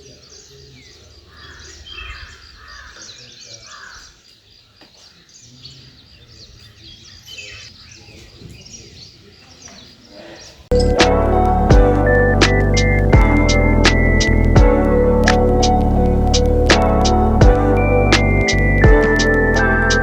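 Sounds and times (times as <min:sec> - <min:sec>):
birds calling and chirping: 0:00.0 - 0:11.0.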